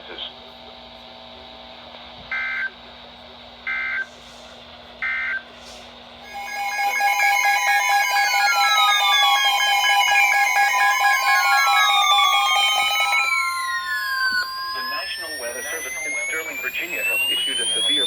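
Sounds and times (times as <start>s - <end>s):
data burst: 6.2s - 18.0s
two-tone attention signal: 6.2s - 18.0s.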